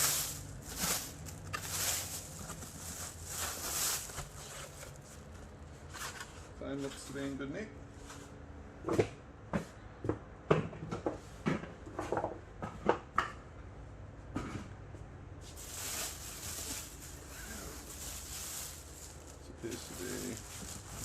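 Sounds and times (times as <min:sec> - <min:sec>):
packaging rustling: 0:00.0 - 0:05.6, 0:15.6 - 0:21.0.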